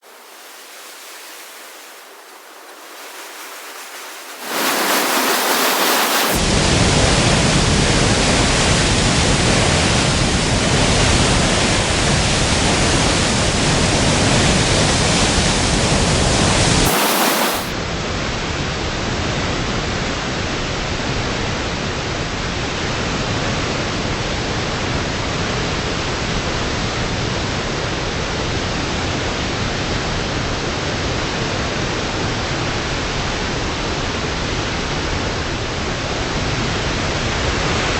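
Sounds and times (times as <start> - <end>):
water rushing through spillway: 0.0 - 6.4, 16.9 - 17.7.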